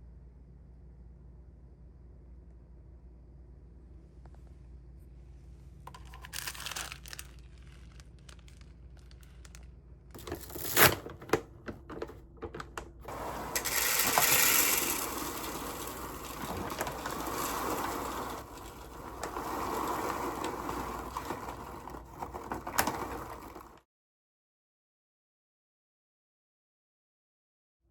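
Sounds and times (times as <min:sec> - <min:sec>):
packaging crinkling and tearing: 0:05.9 - 0:11.2, 0:13.5 - 0:23.8.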